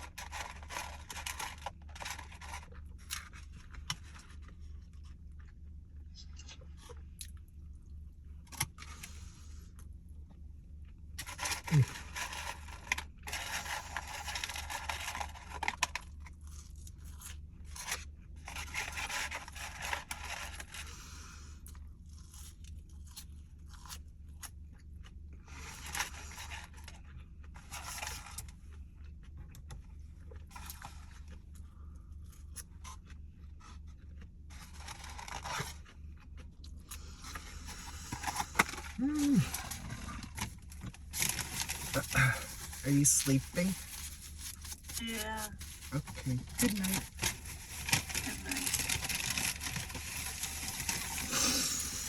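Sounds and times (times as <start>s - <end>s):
wrapper crinkling: 38.2s - 52.0s.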